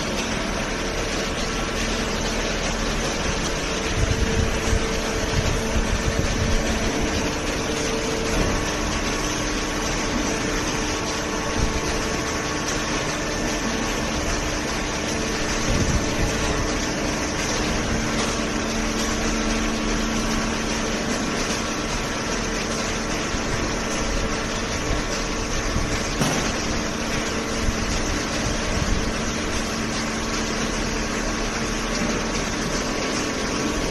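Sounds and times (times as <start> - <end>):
shredder machinery running: 0.0 - 33.9
brief machine knocks: 26.2 - 26.8.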